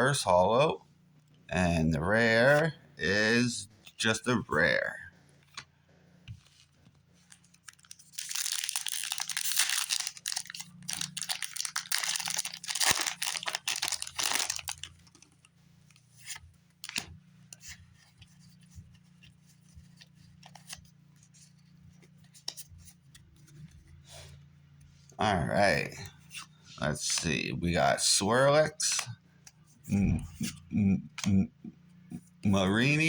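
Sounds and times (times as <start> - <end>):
foil wrapper tearing and crinkling: 7.6 - 15.2.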